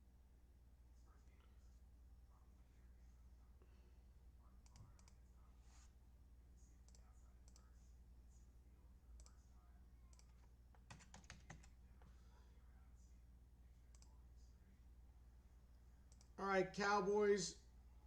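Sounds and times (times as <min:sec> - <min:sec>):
low steady hum: 0:00.0 - 0:18.0
computer keys typing: 0:06.8 - 0:07.8, 0:10.1 - 0:12.1, 0:13.9 - 0:14.2.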